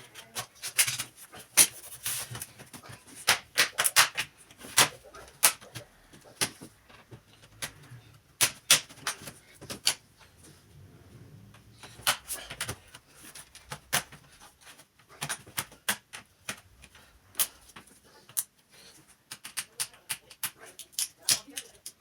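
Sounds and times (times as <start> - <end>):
plastic laptop parts handled: 0.0 - 10.0, 11.8 - 22.0
screwdriver clicks and taps: 19.3 - 22.0.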